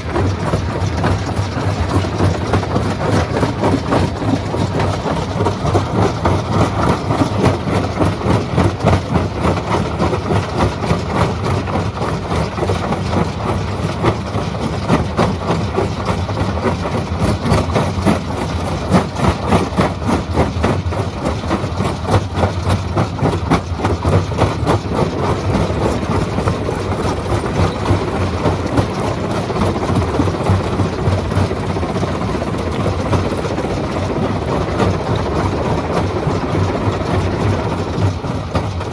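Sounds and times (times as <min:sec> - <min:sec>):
stone crusher machine drone: 0:11.8 - 0:38.9.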